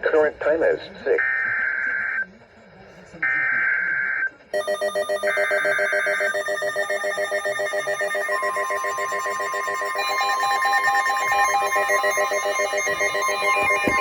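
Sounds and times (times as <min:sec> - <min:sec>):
steady alarm tone: 0:01.2 - 0:02.2, 0:03.2 - 0:14.0
pulsing ringing beeps: 0:03.2 - 0:14.0
digital data burst: 0:05.8 - 0:14.0.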